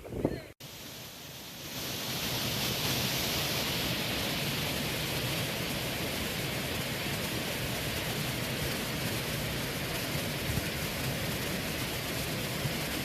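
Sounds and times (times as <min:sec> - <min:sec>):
strong wind blowing: 0:00.0 - 0:00.6.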